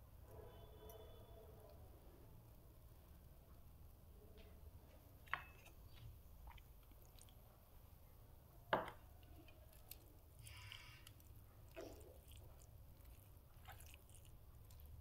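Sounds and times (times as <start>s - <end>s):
person chewing food: 4.9s - 7.6s, 9.2s - 15.0s.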